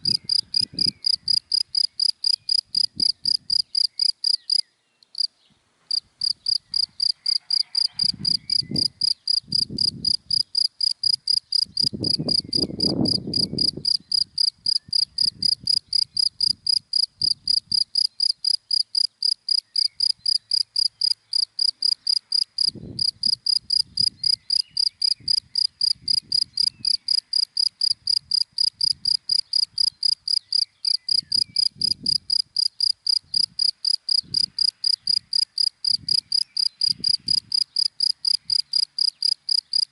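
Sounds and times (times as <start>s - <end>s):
cricket chirping: 0.0s - 5.3s, 5.9s - 39.9s.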